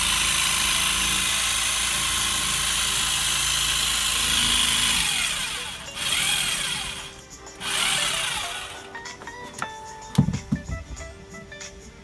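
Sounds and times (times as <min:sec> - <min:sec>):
electric jigsaw cutting pumpkin: 0:00.0 - 0:08.9.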